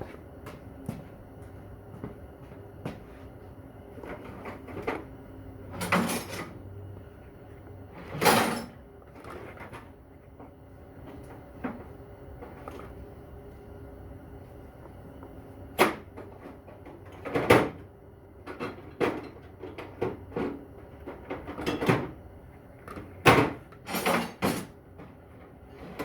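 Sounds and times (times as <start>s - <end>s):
drawers opening and shutting: 5.7s - 6.6s, 8.0s - 9.9s, 22.9s - 24.8s.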